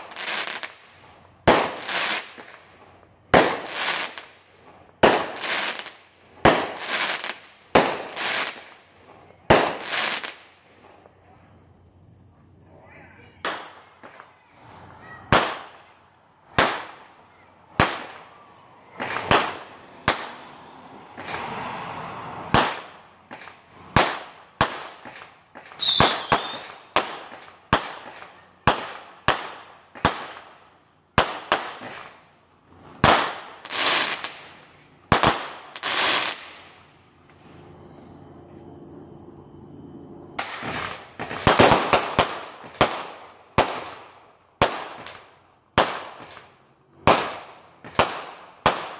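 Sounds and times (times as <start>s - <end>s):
fireworks exploding: 0.0s - 11.3s, 12.6s - 38.0s, 40.2s - 48.9s.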